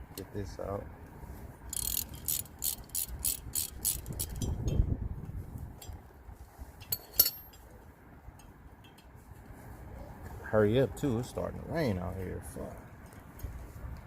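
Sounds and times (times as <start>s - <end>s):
ratchet wrench clicking: 1.7s - 4.8s, 6.9s - 7.6s.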